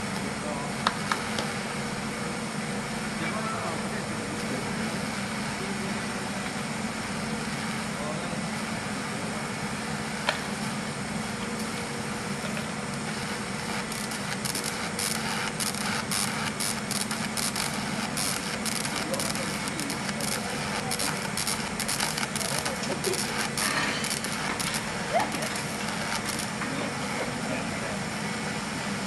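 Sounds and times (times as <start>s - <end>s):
welding workshop hum and hiss: 0.0s - 29.0s
welding crackling: 12.4s - 27.2s.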